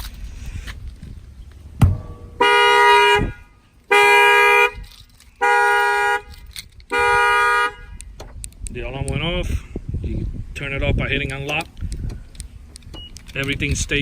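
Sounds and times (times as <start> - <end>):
sharp knock: 1.8 - 3.1.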